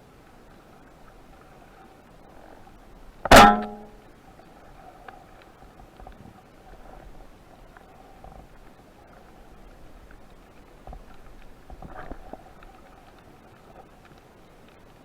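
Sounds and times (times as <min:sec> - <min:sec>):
shaft ringing twang: 0:03.3 - 0:04.0
speargun firing crack: 0:03.3 - 0:04.0.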